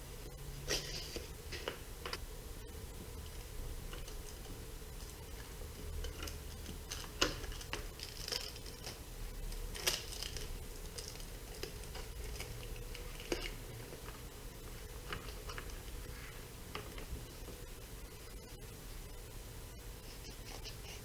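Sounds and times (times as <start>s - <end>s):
faint steady hum: 0.0s - 21.0s
tape crinkling and clicking: 3.2s - 16.1s.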